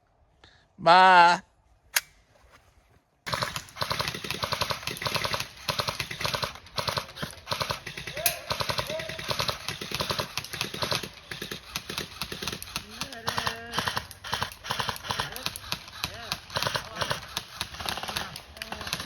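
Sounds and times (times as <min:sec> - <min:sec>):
airsoft guns firing: 0:03.3 - 0:19.0.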